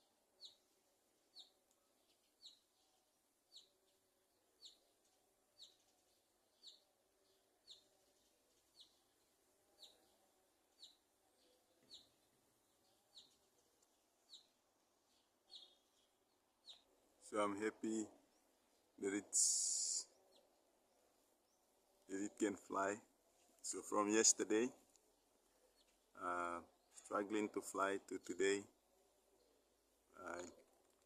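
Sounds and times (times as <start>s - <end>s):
small bird chirping: 0.0s - 17.3s, 18.2s - 27.1s.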